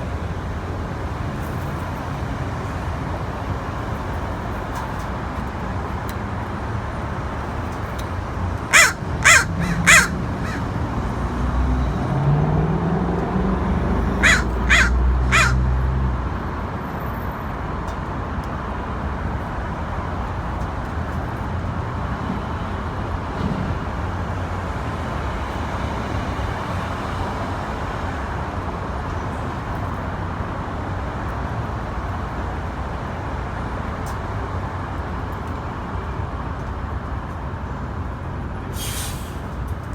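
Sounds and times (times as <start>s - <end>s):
steady traffic noise: 0.0s - 39.9s
crows cawing: 8.7s - 10.9s, 14.0s - 15.8s
vehicle passing: 8.7s - 16.3s.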